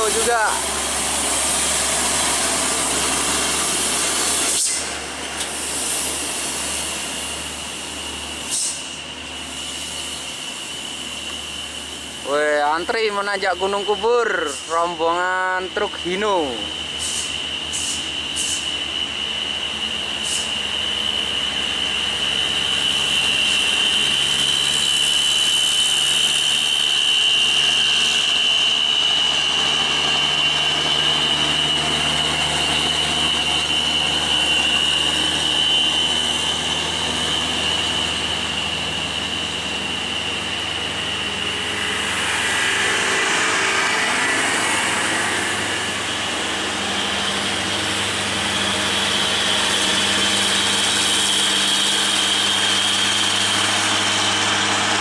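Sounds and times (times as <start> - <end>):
diesel truck engines labouring: 0.0 - 55.0
steady high-pitched whine: 0.0 - 55.0
rush of approaching truck: 16.8 - 55.0.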